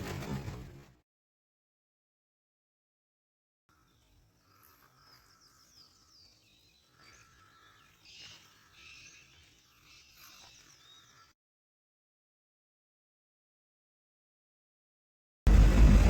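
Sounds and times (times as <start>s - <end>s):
small birds chirping and trilling: 3.7s - 11.4s.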